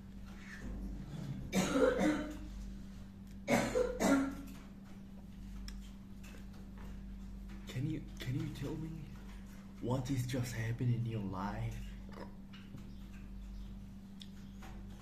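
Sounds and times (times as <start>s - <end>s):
steady low hum: 0.0s - 15.0s
person coughing: 1.5s - 2.5s, 3.5s - 4.5s.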